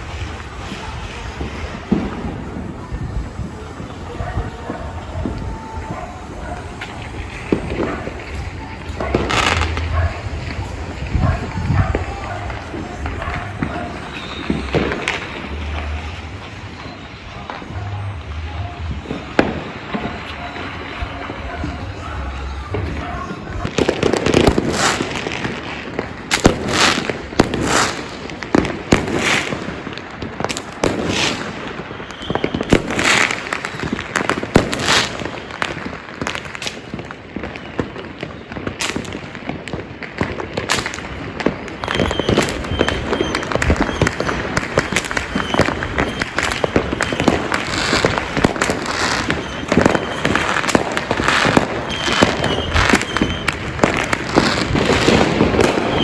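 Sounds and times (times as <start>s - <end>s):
firecrackers crackling: 0.0s - 56.0s
firework bangs: 0.0s - 56.0s.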